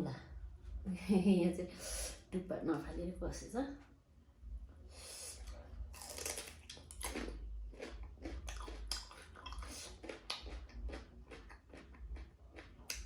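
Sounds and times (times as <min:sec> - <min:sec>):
person chewing food: 0:05.2 - 0:13.0.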